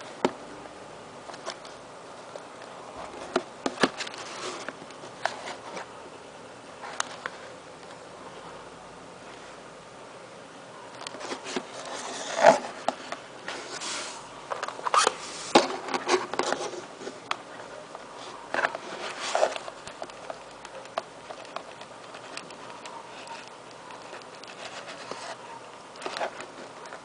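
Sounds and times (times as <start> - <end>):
packaging being opened by hand: 14.5 - 17.4.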